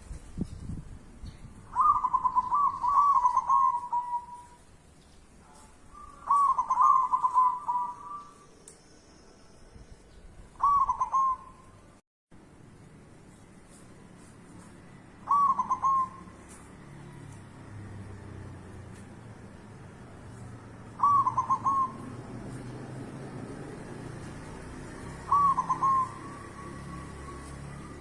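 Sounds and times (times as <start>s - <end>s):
dove cooing: 1.8s - 4.5s, 6.0s - 8.4s, 10.6s - 11.6s, 15.2s - 16.3s, 20.9s - 22.7s, 24.8s - 28.0s.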